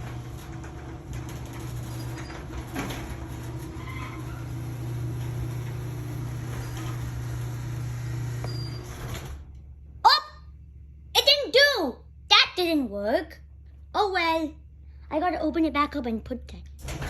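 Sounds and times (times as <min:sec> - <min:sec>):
garage door opener humming: 0:00.0 - 0:11.2, 0:16.7 - 0:17.0.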